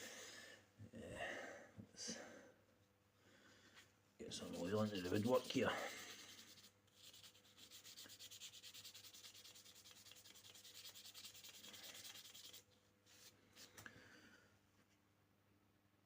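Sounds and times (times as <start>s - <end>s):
rubbing on wooden handle: 4.2s - 12.6s.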